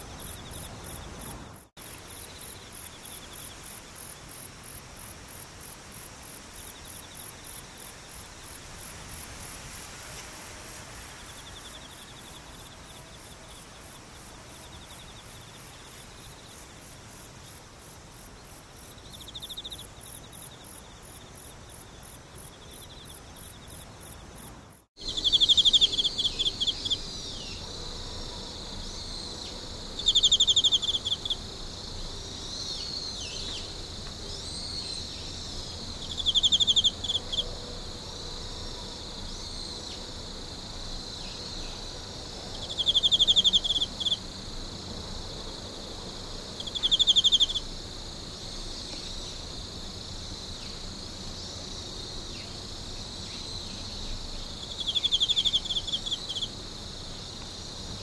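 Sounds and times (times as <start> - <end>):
faint insect trilling: 0.0 - 27.6, 30.0 - 31.9, 36.0 - 37.5, 42.6 - 44.4, 46.6 - 47.8, 53.2 - 57.4
quick insect chirping calls: 0.0 - 27.6, 30.0 - 33.8, 34.4 - 37.4, 42.5 - 44.8, 46.6 - 57.8
high regular insect chirp: 0.0 - 37.5, 39.0 - 58.0
insect chorus with pulsing trills: 0.0 - 58.0.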